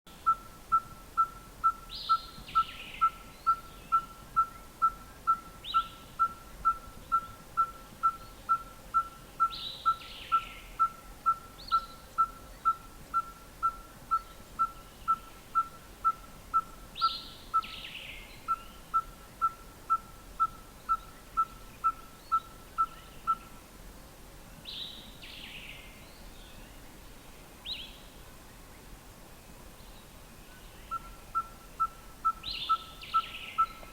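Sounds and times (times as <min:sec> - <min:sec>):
bird high falling calls: 0:00.2 - 0:23.6, 0:30.6 - 0:33.9.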